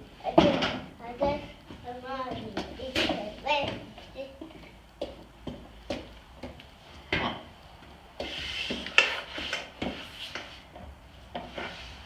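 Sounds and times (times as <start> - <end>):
scraping rub: 8.2 - 10.6, 11.4 - 12.0.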